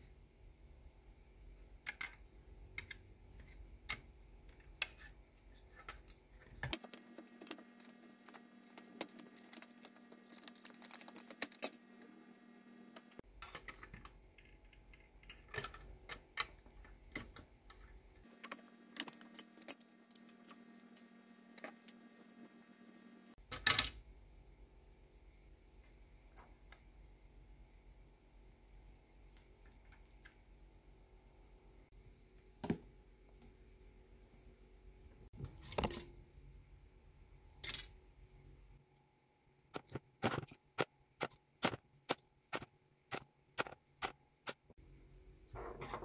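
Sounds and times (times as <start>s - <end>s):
small parts clicking and tapping: 5.8s - 12.2s, 13.0s - 22.0s, 39.7s - 44.7s.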